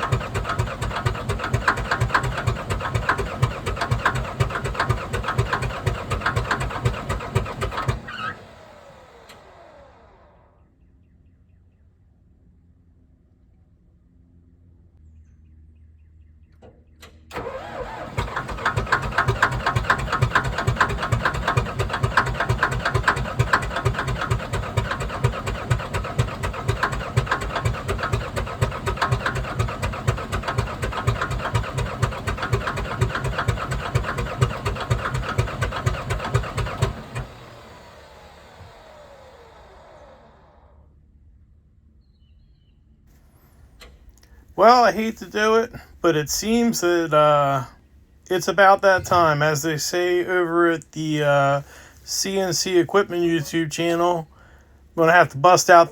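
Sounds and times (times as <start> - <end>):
diesel engine cranking on starter: 0.0 - 10.7, 17.0 - 40.9, 48.3 - 55.9.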